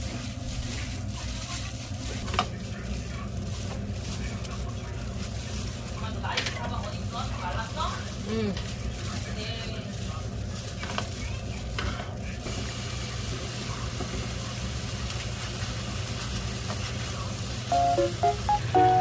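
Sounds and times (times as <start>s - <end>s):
food sizzling in a frying pan: 0.0s - 19.0s
light background music: 17.7s - 19.0s.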